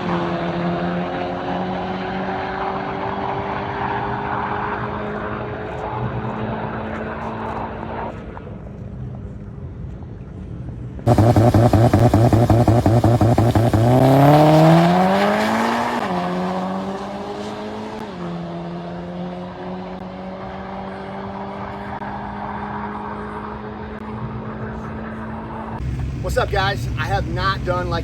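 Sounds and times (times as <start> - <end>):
drag race car engine: 11.1 - 28.0.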